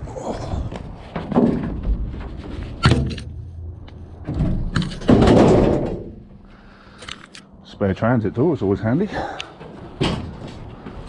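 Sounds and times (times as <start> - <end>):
scrap metal clanks and knocks: 1.1 - 6.4.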